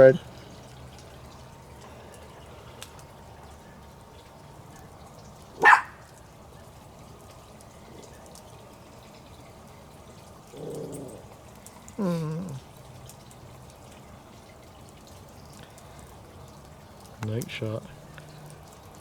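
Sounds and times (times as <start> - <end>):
low steady background noise: 0.0 - 19.0
dog barking sharply: 5.6 - 6.0
brief low vocal sound: 12.0 - 12.6.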